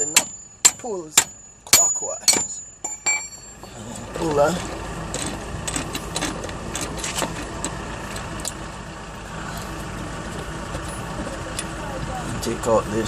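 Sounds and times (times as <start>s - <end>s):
metal tools clinking on nut: 0.0s - 3.8s.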